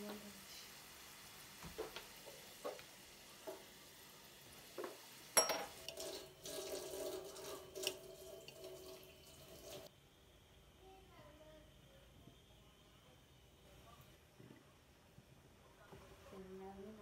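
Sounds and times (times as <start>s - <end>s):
water running from a tap: 4.5s - 9.9s.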